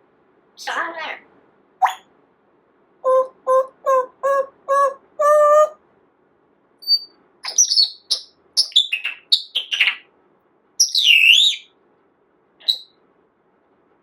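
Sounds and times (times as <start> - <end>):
parrot chirping and whistling: 1.8 - 2.0, 3.1 - 5.8, 6.8 - 10.0, 10.8 - 11.7, 12.6 - 12.9.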